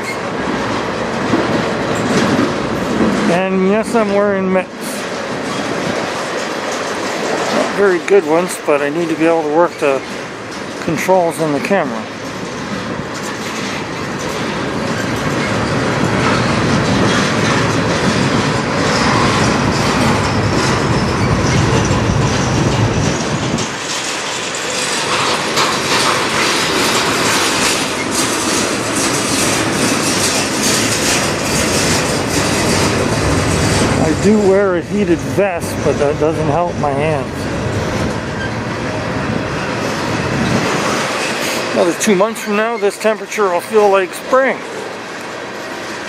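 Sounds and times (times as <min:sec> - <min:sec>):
clickety-clack over rail joints: 0:00.0 - 0:46.0
train wheels rumbling on rails: 0:00.0 - 0:46.0.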